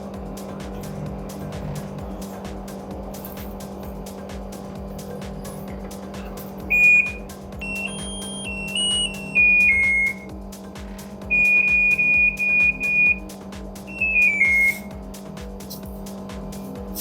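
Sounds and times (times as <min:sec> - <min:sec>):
steady low hum: 0:00.0 - 0:17.0
electronic beeper melodies and beeps: 0:06.7 - 0:10.4, 0:11.3 - 0:13.3, 0:13.9 - 0:14.9.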